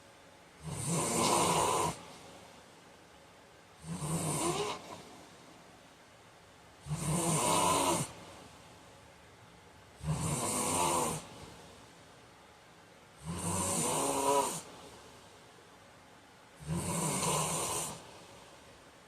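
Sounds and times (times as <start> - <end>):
man snoring loudly: 0.6 - 2.0, 3.8 - 5.0, 6.8 - 8.2, 10.0 - 11.3, 13.2 - 14.7, 16.6 - 18.0
quiet breathing: 0.6 - 2.9, 10.0 - 12.2, 13.1 - 15.6, 16.6 - 19.0.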